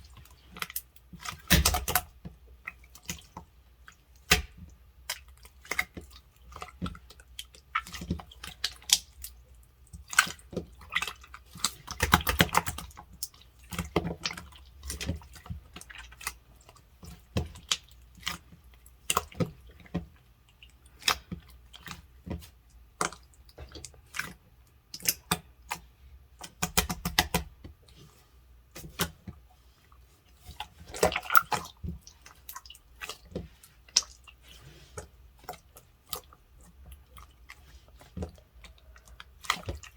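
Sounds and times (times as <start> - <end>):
slime clicking and popping: 1.4 - 2.1, 4.3 - 4.6.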